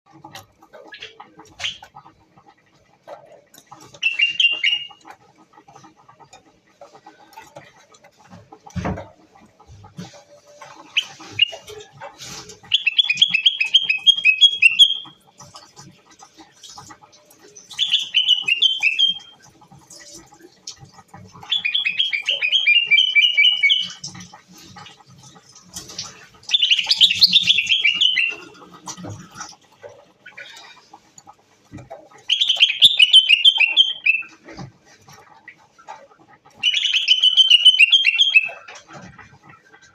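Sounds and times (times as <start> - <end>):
bird singing whistled notes: 4.0 - 5.0, 26.6 - 28.4, 32.3 - 34.3, 36.6 - 38.6.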